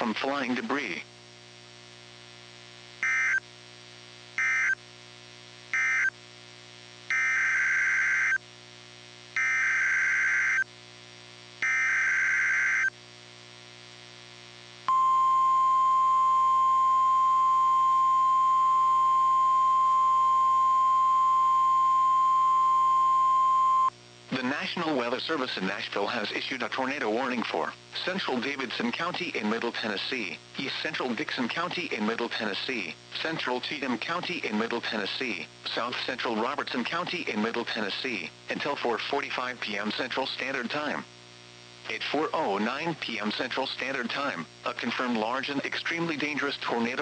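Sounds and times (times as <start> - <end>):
steady warning alarm tone: 3.0 - 3.4, 4.4 - 4.8, 5.8 - 6.1, 7.1 - 8.4, 9.4 - 10.6, 11.6 - 12.9, 14.9 - 23.9.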